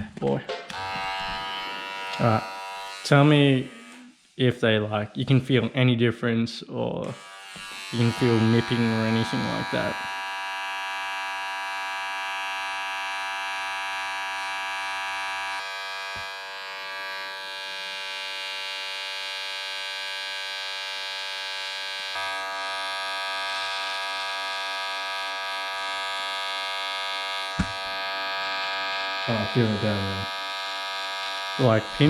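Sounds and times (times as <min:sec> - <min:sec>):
hair trimmer buzzing: 0:00.7 - 0:04.3, 0:07.0 - 0:32.0.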